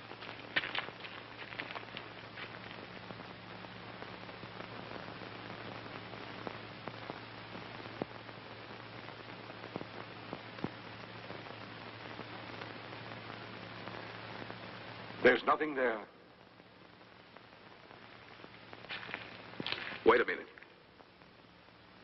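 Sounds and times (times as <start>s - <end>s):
steady hiss: 0.0s - 22.0s
faint scattered clicks: 18.1s - 21.3s.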